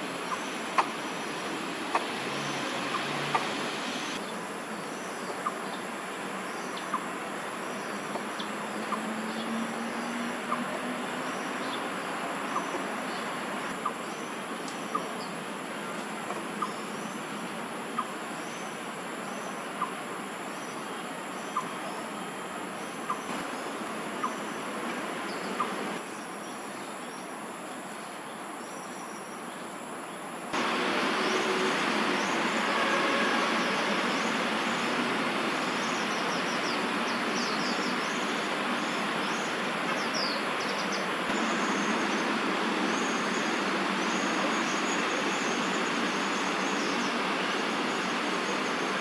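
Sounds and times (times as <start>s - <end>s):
distant traffic rumble: 0.0s - 26.4s, 30.5s - 49.0s
high insect drone: 0.0s - 49.0s
faint bird chirps: 18.0s - 24.7s.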